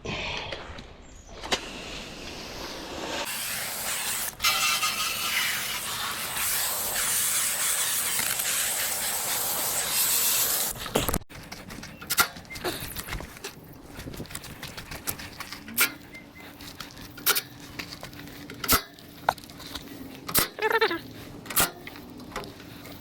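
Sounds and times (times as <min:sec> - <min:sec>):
water spraying hiss: 0:01.6 - 0:10.9.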